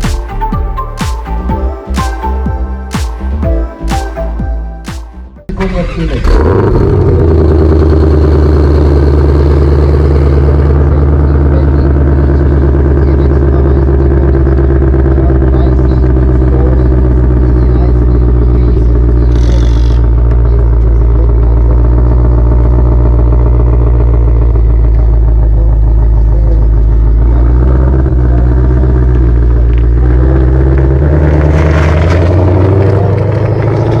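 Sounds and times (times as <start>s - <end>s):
car engine rumbling: 0.0s - 34.0s.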